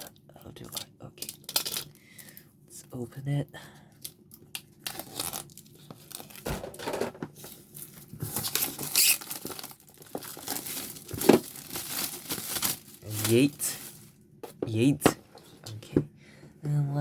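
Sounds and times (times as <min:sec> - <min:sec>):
packaging crinkling and tearing: 0:00.1 - 0:02.4, 0:04.0 - 0:06.5, 0:07.4 - 0:14.2.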